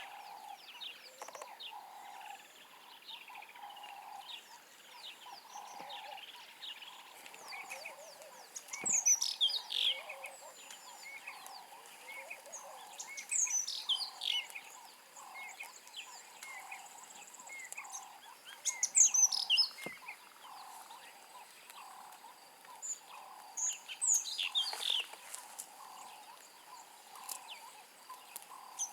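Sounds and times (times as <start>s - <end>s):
soft low bird calls: 0.0s - 28.9s.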